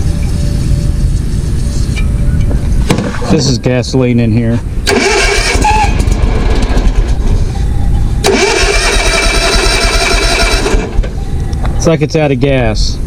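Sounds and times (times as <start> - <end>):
mower engine running unevenly: 8.2 - 11.0.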